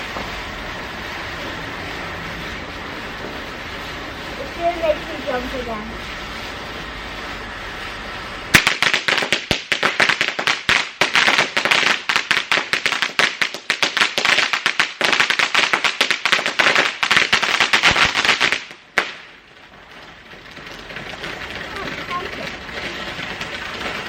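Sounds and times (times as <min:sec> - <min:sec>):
firework cracks and bangs: 0:00.0 - 0:24.0.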